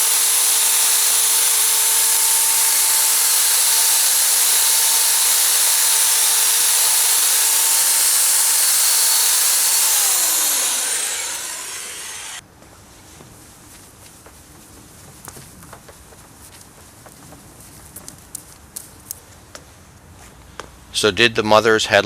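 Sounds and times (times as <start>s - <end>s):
polishing ball rushing hiss: 0.0s - 1.2s
electric drill motor whine: 0.0s - 12.4s.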